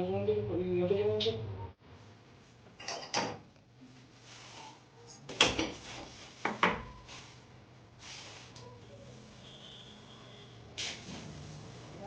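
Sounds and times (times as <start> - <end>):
kitchen things knocking and clattering: 2.8 - 3.5, 5.3 - 7.0.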